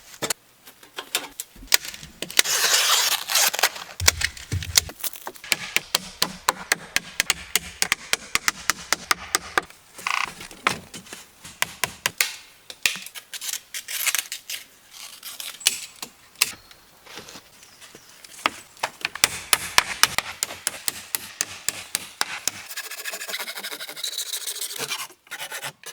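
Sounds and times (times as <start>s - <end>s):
scraping on wood: 1.6s - 12.2s
wood being chopped: 4.0s - 9.7s, 10.6s - 13.1s, 18.4s - 22.6s.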